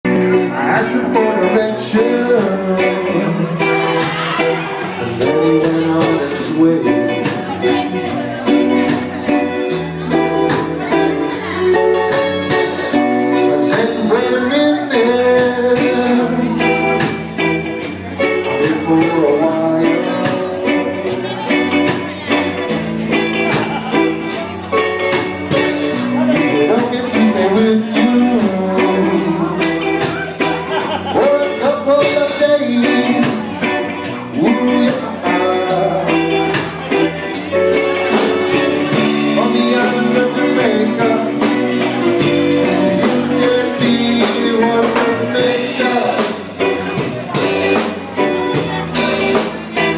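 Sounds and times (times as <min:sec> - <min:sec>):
guitar: 0:00.0 - 0:49.9
person singing: 0:00.0 - 0:49.9
drum beat: 0:35.8 - 0:49.9.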